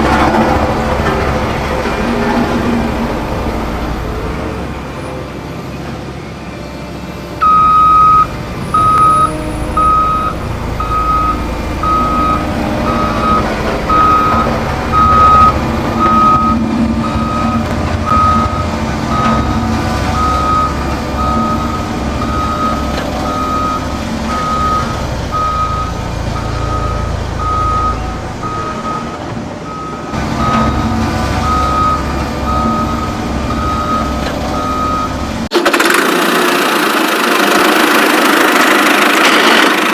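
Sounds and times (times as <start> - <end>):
low motor rumble: 0.0 - 35.5
reversing alarm beeping: 7.3 - 35.4.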